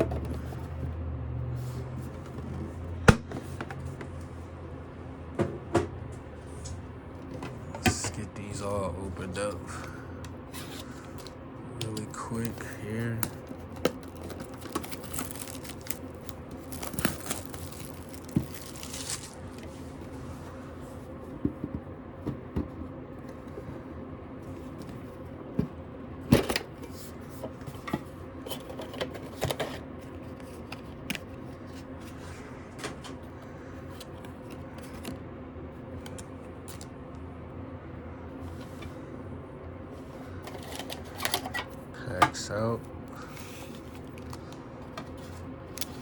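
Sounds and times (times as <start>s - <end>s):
steady low hum: 0.0s - 46.0s
packaging clicks taps and rustles: 11.0s - 19.7s, 40.4s - 46.0s.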